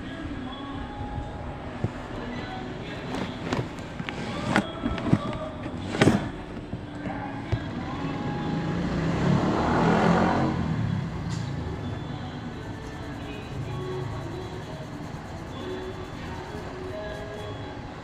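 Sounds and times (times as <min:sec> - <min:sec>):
passing vehicle rumble: 0:07.7 - 0:14.0.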